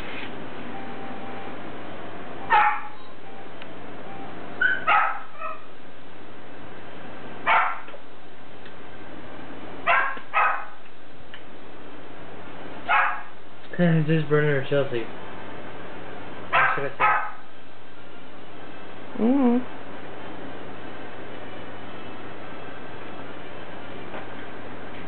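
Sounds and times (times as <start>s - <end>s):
dog barking: 2.5s - 3.1s, 4.6s - 5.7s, 7.4s - 8.0s, 9.8s - 10.8s, 12.9s - 13.4s, 16.5s - 17.5s.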